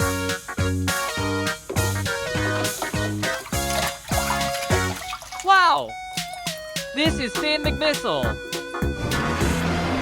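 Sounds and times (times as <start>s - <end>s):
bouncy background music: 0.0s - 10.0s.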